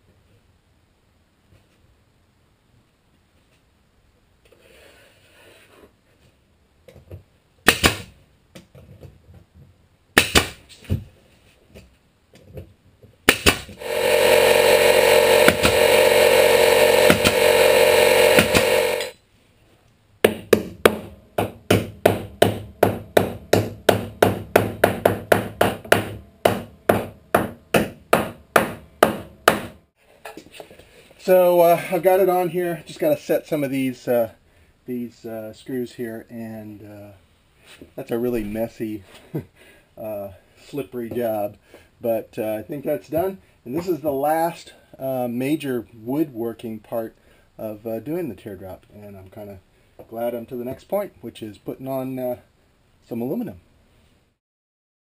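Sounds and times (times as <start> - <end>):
hammer strikes: 13.3 - 19.1, 20.2 - 29.8
power tool running: 13.8 - 19.1.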